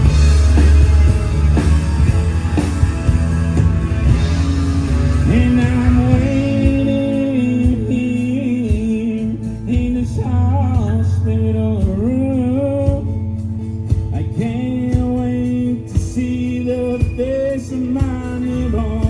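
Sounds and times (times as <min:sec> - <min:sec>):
bending melodic lead line: 0:00.0 - 0:08.6
country-rock band playing: 0:00.0 - 0:19.0.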